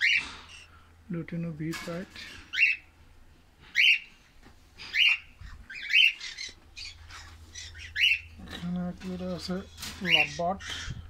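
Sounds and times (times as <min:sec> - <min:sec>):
parrots making shrill calls: 0:02.5 - 0:02.9, 0:03.7 - 0:04.1, 0:04.9 - 0:08.4.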